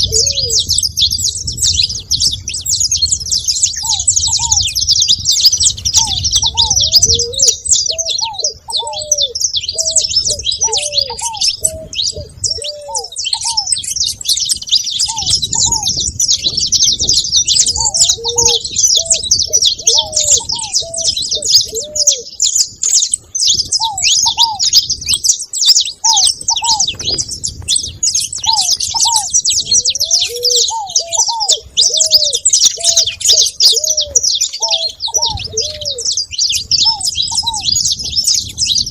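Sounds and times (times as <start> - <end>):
doves cooing: 0.0 - 38.9
finches chirping: 0.0 - 38.9.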